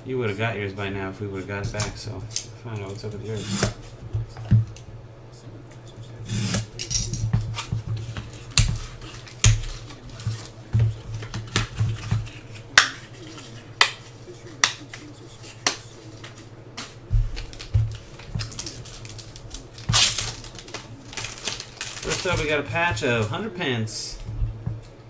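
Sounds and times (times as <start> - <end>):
steady low hum: 0.0 - 25.0
cards and packaging clicking: 6.3 - 23.4.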